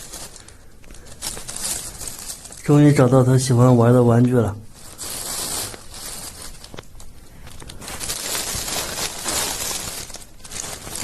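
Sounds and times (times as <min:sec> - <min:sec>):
plastic bag crinkling: 0:00.0 - 0:11.0.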